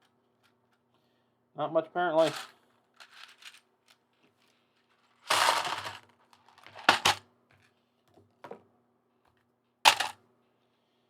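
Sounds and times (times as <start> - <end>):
plastic pieces rattling: 2.2 - 3.6, 5.2 - 7.2.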